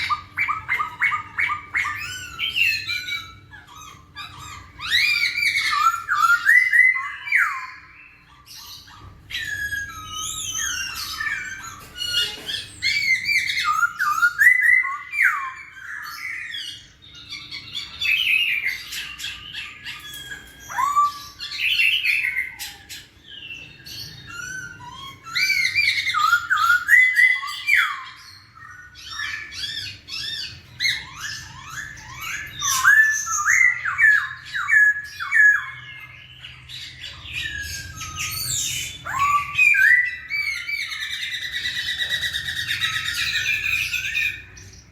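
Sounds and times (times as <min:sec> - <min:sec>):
bird singing whistled song: 0:00.0 - 0:44.9.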